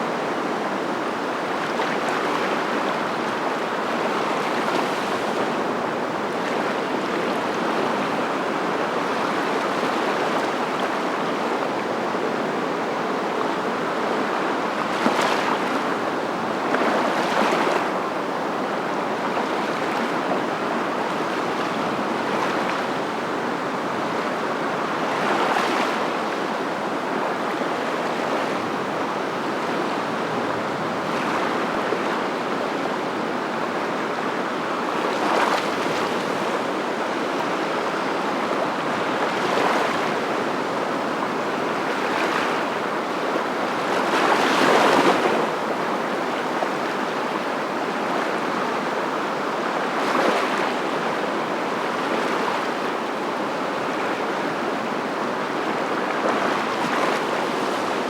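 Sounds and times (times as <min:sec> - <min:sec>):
waves washing in: 0:34.8 - 0:54.3.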